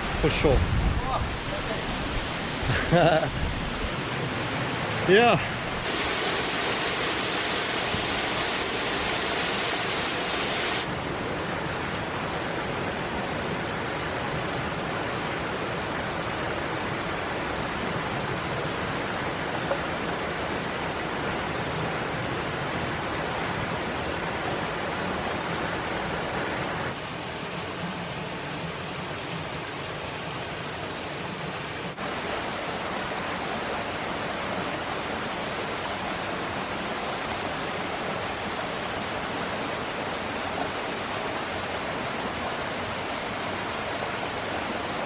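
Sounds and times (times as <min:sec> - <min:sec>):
high hiss of water: 0:00.0 - 0:11.0, 0:26.9 - 0:32.1
waterfall rushing: 0:00.0 - 0:21.2, 0:23.7 - 0:45.0.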